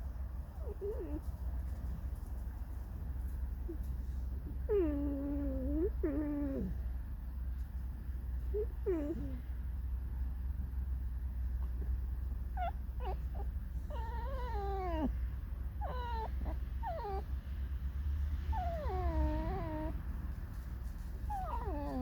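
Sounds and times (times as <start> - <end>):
fox whining: 0.5 - 1.3, 4.5 - 6.8, 8.5 - 9.5, 12.4 - 15.2, 15.8 - 17.4, 18.5 - 20.0, 21.2 - 22.0.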